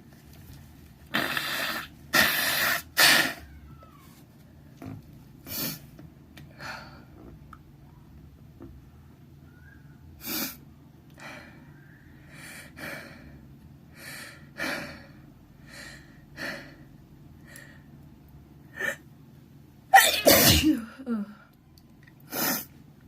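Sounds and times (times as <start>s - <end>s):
person sneezing: 20.0s - 21.0s.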